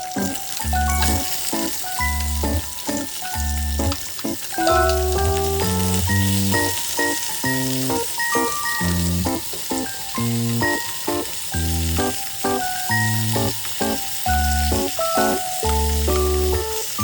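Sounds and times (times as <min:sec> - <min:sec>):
tofu sizzling in a frying pan: 0:00.0 - 0:17.0
background music with bass: 0:00.6 - 0:01.3, 0:02.0 - 0:02.7, 0:04.7 - 0:06.8, 0:08.8 - 0:09.4, 0:11.6 - 0:12.2, 0:15.7 - 0:16.7.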